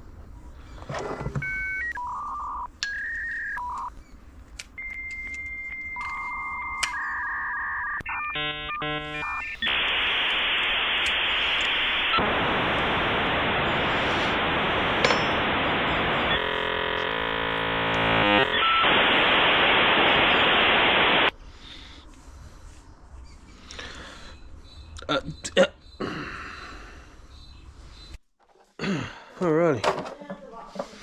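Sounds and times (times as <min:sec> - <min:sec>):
dial-up modem tones: 0:01.3 - 0:03.9, 0:04.8 - 0:21.3
hissing static: 0:06.8 - 0:21.3.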